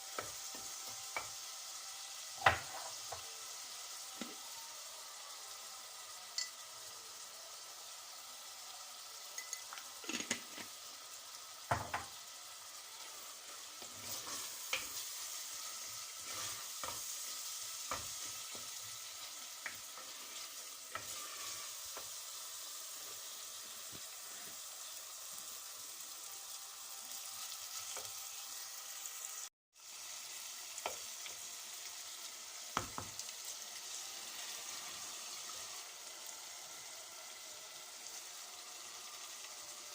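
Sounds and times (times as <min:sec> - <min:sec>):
food sizzling in a pan: 0:00.0 - 0:39.9
utensil scraping a pan: 0:13.8 - 0:15.1, 0:15.8 - 0:22.1.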